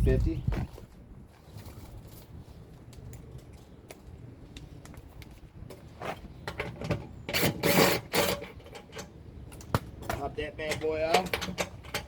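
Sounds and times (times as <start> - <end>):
metal rattling and scraping: 6.0 - 9.2, 10.1 - 12.0.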